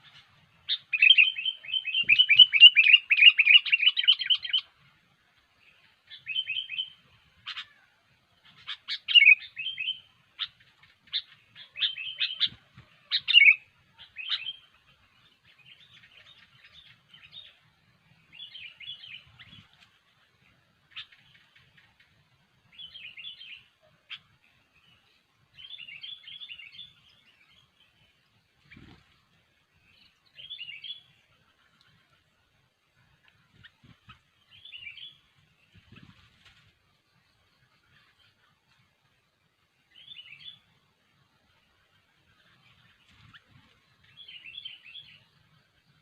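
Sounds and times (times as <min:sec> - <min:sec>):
bulbul chirping song: 0:00.0 - 0:04.8, 0:05.8 - 0:14.8.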